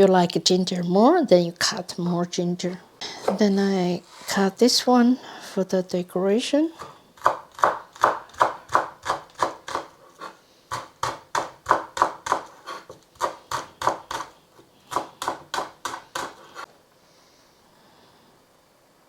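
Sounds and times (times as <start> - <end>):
knife chopping on cutting board: 7.2 - 16.6.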